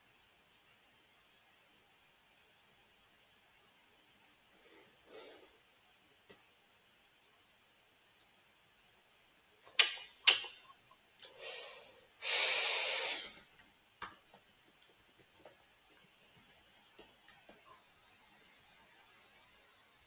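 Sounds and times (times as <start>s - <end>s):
keyboard typing: 13.2s - 17.7s.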